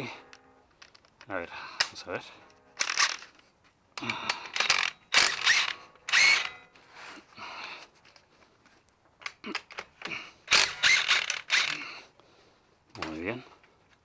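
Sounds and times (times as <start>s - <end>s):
power tool bursts: 2.8s - 3.3s, 4.4s - 6.6s, 10.5s - 11.8s.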